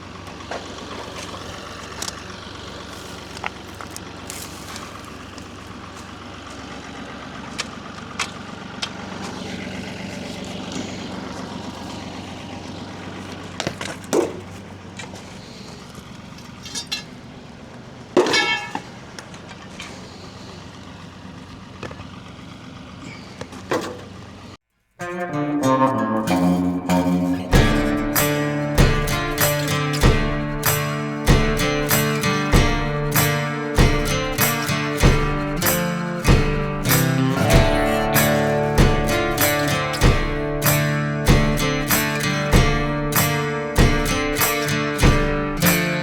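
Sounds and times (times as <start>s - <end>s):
sharp clanks and knocks: 16.5s - 17.2s, 18.2s - 19.9s, 26.3s - 46.0s
digging machine engine running: 26.3s - 46.0s.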